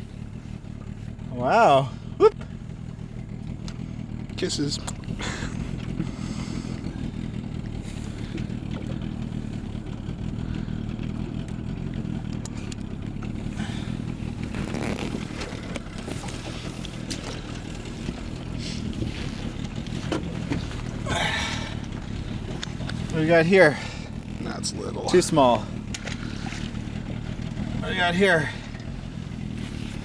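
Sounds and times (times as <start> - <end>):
outboard motor idling: 0.0 - 30.0
light clicks and clatter: 7.6 - 13.6, 14.3 - 21.0, 21.8 - 23.2.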